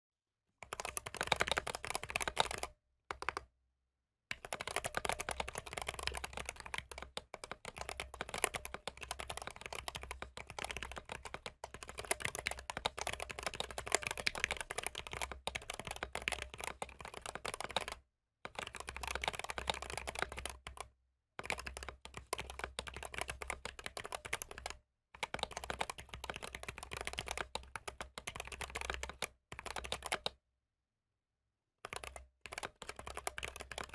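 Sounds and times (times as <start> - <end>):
mechanical keyboard typing: 0.6 - 3.5, 4.3 - 30.4, 31.8 - 33.9.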